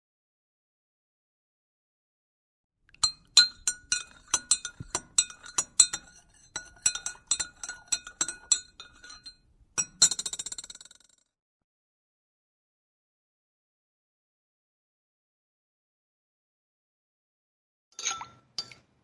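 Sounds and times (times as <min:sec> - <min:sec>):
glass clinking: 0:03.0 - 0:11.1, 0:18.0 - 0:18.9.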